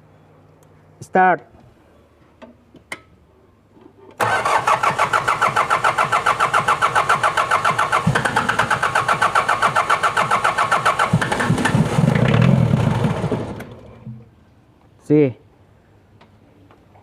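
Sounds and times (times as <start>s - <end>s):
diesel engine cranking: 4.2s - 14.1s.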